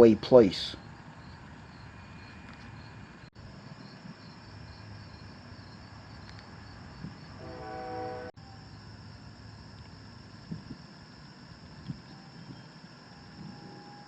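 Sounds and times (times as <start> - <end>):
crickets chirping: 0.0 - 14.0
distant horn-like tone: 7.4 - 8.4.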